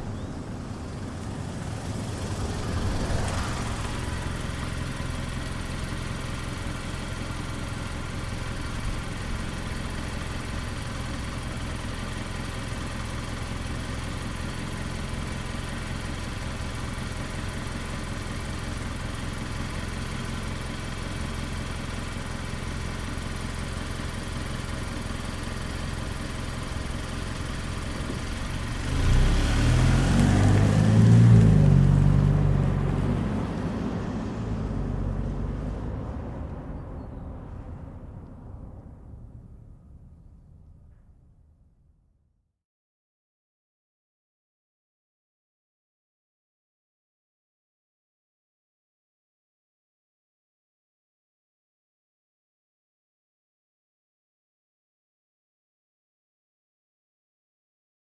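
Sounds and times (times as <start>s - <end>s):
car driving away: 0.0s - 42.0s
car engine idling: 0.0s - 42.2s.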